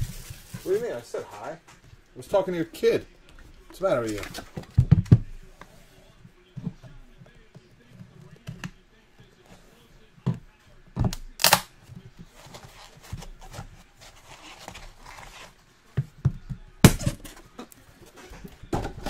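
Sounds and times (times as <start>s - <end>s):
packaging rustle: 0.0s - 1.2s.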